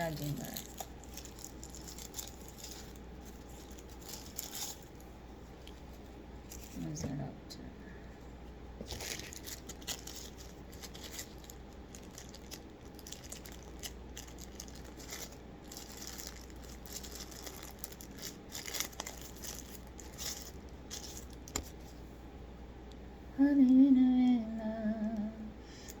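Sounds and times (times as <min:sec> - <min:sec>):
plastic packaging crinkling: 0:00.0 - 0:06.9, 0:08.8 - 0:21.9.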